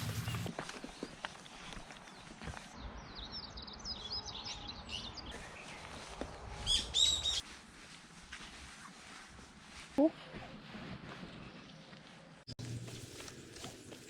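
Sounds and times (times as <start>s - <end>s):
small birds twittering: 0.2s - 7.4s.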